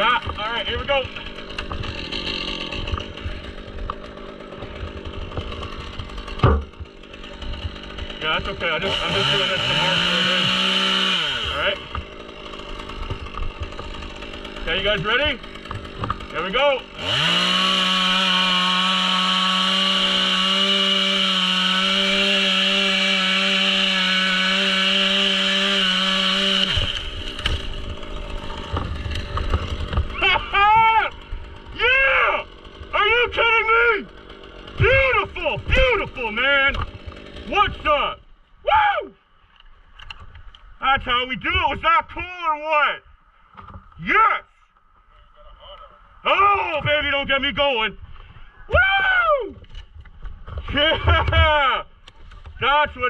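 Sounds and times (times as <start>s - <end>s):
chainsaw engine running: 0.0s - 38.3s.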